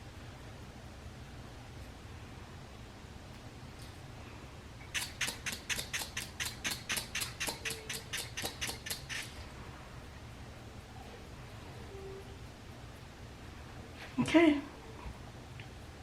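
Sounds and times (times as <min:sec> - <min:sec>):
short spray puffs: 0:04.8 - 0:09.5.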